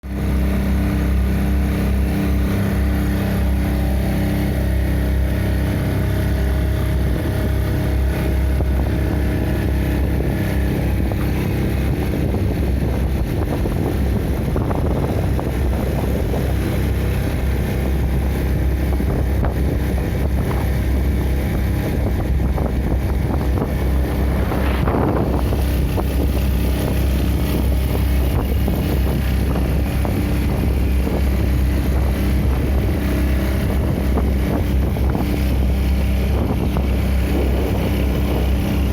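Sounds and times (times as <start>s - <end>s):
motorboat engine running: 0.0s - 38.9s.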